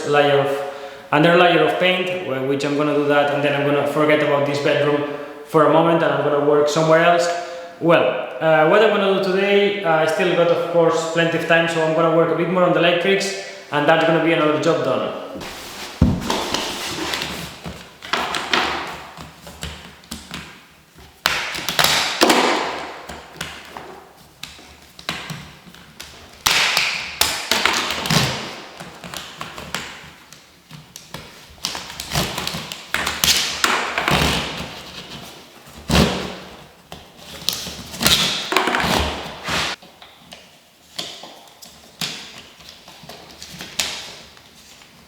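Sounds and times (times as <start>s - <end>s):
taps knocks and thuds: 16.0s - 16.7s.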